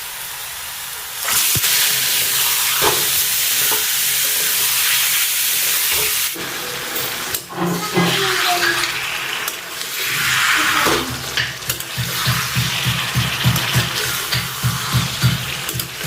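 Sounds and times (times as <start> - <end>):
chicken sizzling in a pan: 0.0 - 16.0.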